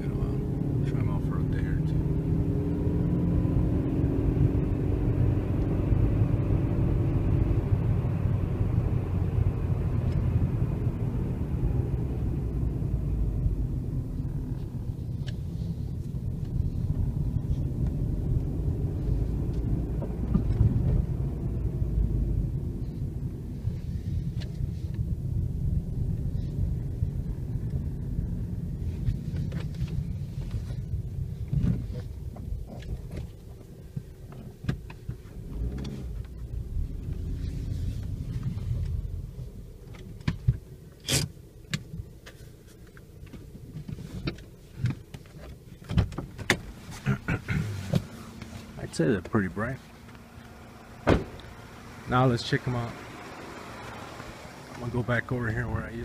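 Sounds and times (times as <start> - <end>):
car engine rumble: 0.0 - 56.0
road noise: 0.0 - 56.0.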